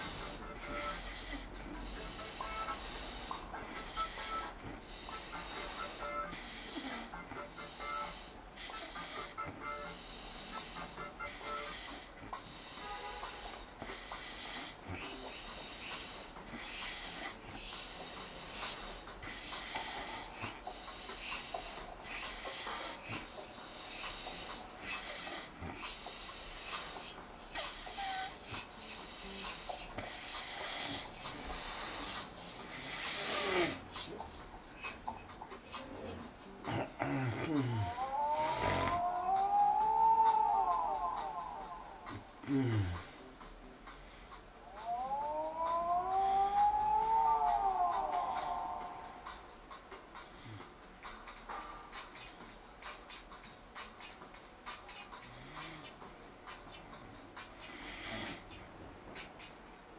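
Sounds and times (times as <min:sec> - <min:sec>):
man snoring: 0:27.8 - 0:33.8, 0:36.7 - 0:39.1, 0:42.1 - 0:43.1, 0:57.7 - 0:58.5.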